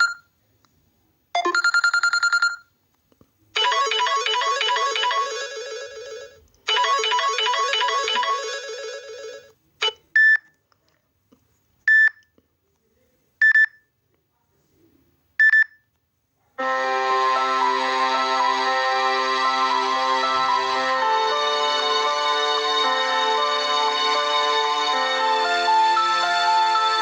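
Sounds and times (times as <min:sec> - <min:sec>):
melodic ringtone: 0:03.6 - 0:09.5, 0:16.6 - 0:27.0
ringtone with sustained notes: 0:03.6 - 0:09.5, 0:16.6 - 0:27.0.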